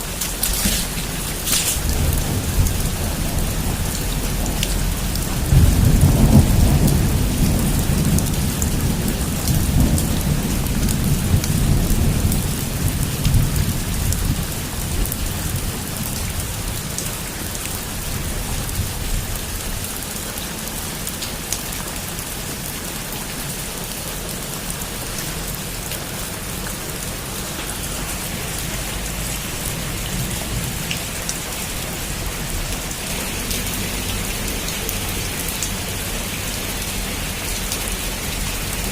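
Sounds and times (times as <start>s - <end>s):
thunder rumbling: 0.0s - 19.9s
heavy rain on a roof: 0.0s - 38.9s.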